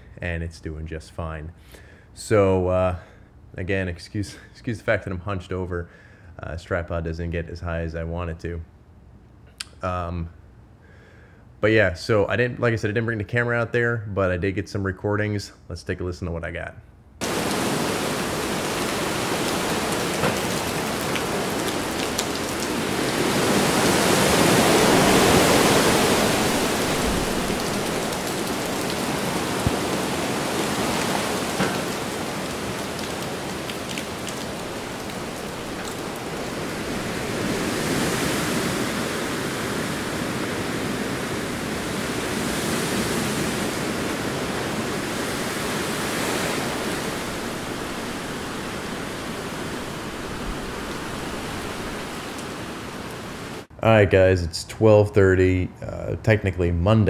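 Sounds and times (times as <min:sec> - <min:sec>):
gusting wind: 0:17.2 - 0:53.7
heavy rain: 0:17.2 - 0:53.7.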